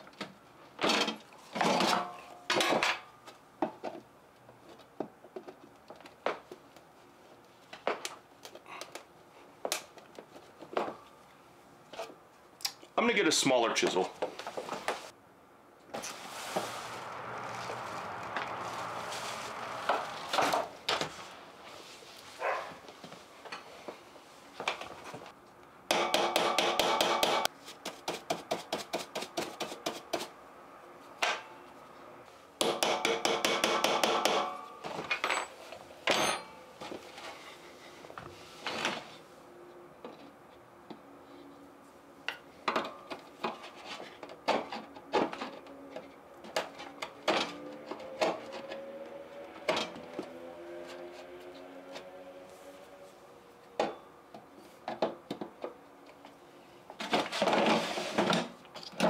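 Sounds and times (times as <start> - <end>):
knocks and scrapes: 15.9 - 24.0, 56.9 - 59.0.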